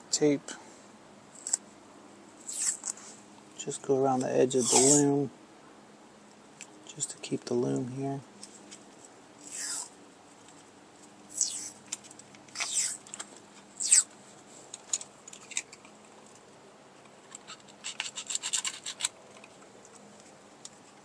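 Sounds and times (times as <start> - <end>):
tape crackling: 2.4 - 3.0, 8.4 - 21.0
tape pulled off roll rasping: 2.4 - 3.2, 4.6 - 5.0, 8.4 - 10.0, 11.3 - 16.4, 17.3 - 21.0.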